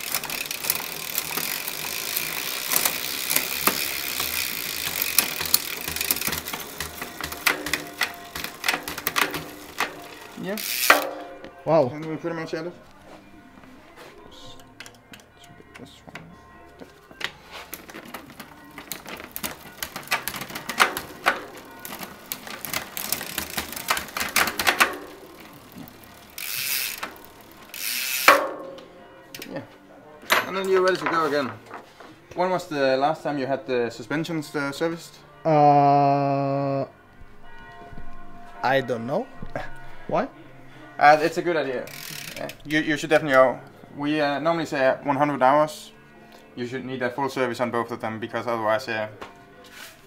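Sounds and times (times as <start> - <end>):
bicycle freehub ratcheting: 0.0 - 11.4, 17.7 - 28.6, 41.8 - 43.3.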